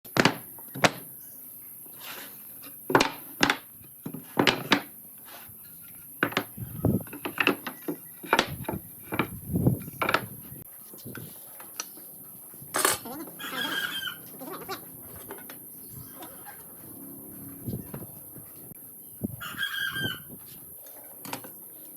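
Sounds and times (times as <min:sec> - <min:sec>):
boards and tools knocking: 0:00.1 - 0:01.0, 0:02.9 - 0:04.9, 0:06.2 - 0:10.4.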